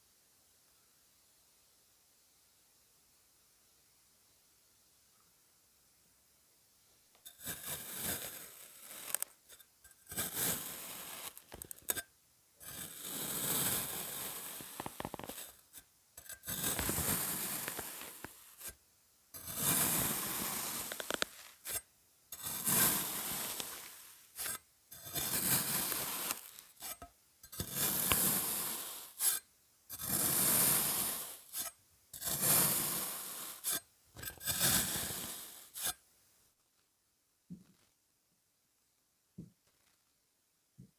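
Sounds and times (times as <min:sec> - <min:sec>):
sand being cut crunchily: 0:07.4 - 0:09.4, 0:10.1 - 0:11.9, 0:12.6 - 0:15.6, 0:16.4 - 0:18.8, 0:19.4 - 0:21.8, 0:22.4 - 0:27.0, 0:27.6 - 0:29.4, 0:30.0 - 0:33.8, 0:34.4 - 0:36.0.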